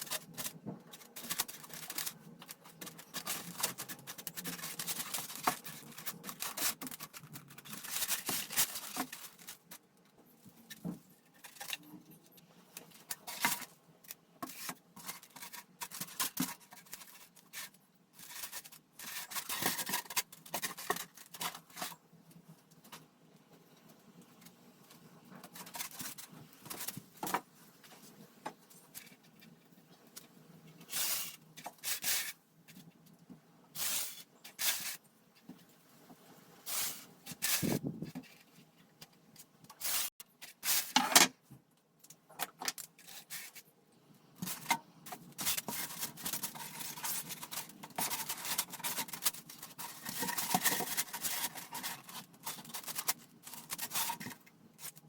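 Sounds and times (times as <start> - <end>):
steady rubbing or scraping: 44.4 - 55.0.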